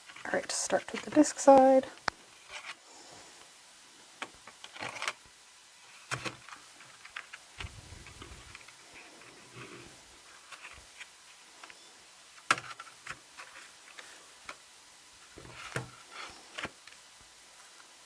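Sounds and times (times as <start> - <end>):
soft rustling: 7.6 - 11.0.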